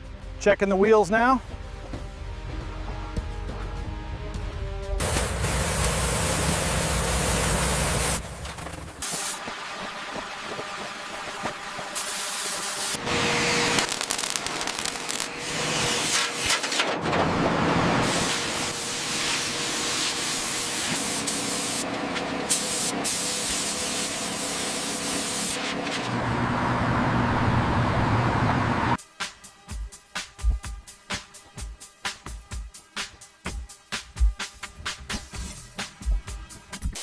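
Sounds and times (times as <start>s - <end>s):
hissing spray noise: 5.0s - 16.2s, 18.0s - 21.8s, 22.5s - 25.7s.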